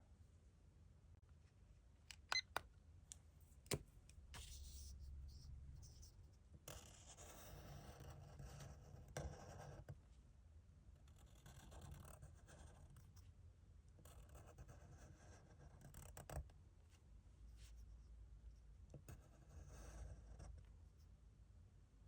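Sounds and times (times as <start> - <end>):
drawing tool scratching paper: 6.7 - 9.9.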